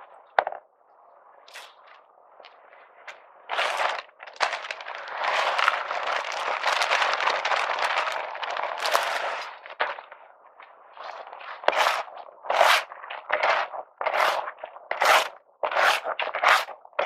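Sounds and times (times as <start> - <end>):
dense crackling rustle: 3.6 - 10.2.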